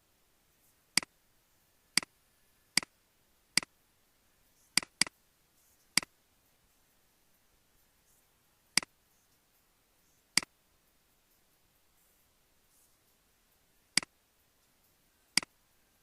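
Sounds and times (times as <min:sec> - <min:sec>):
computer mouse clicking: 0:04.7 - 0:05.2.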